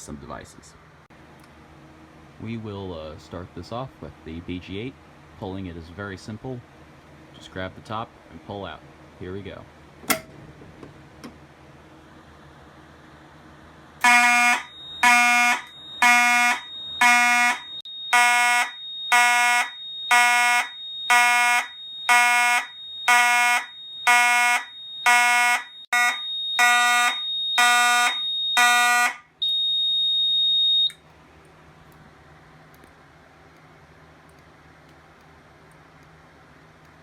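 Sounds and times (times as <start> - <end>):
fire alarm horn buzzing: 14.0 - 31.0.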